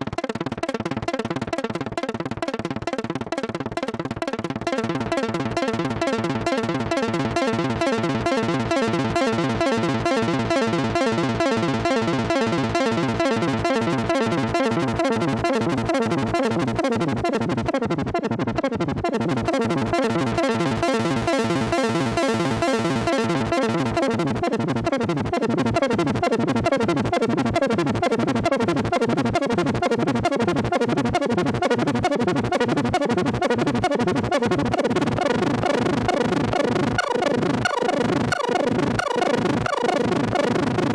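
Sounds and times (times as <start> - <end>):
synthesizer fast repeating notes: 0.0 - 40.9.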